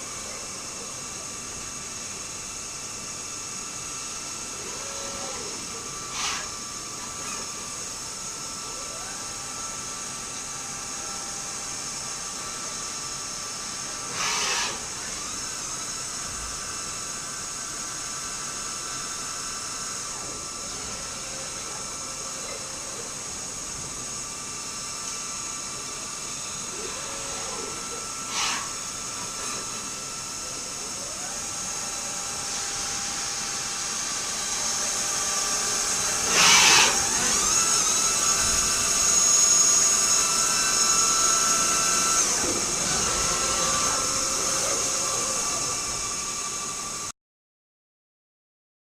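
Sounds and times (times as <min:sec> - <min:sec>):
lathe whining: 0:00.0 - 0:47.1
short noisy bursts: 0:14.1 - 0:15.0, 0:36.2 - 0:37.5.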